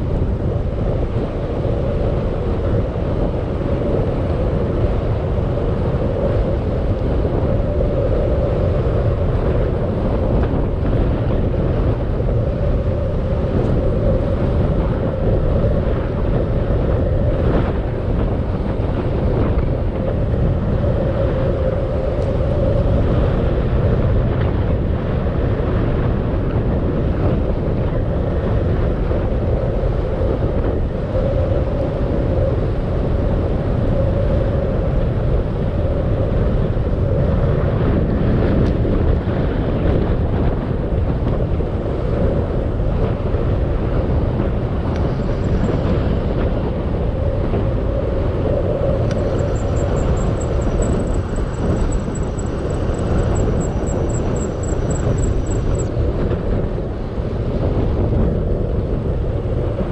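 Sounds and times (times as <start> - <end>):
low rumble: 0.0 - 59.9
wind rushing on microphone: 0.0 - 59.9.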